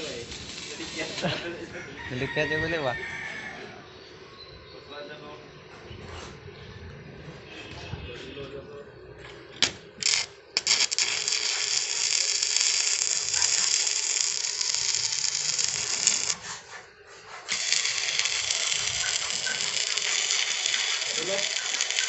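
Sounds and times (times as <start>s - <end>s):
arc welding crackling: 0.0s - 1.6s, 9.6s - 16.7s, 17.4s - 22.0s.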